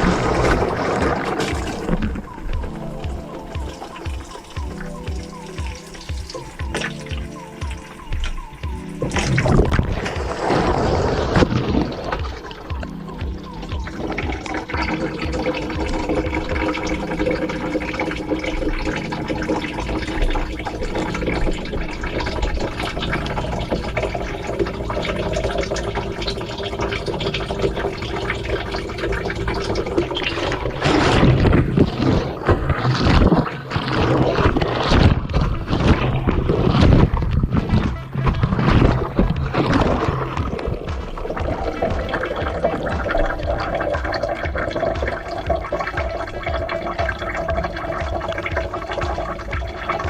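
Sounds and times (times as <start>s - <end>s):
water sloshing in washing machine drum: 0.0s - 50.0s.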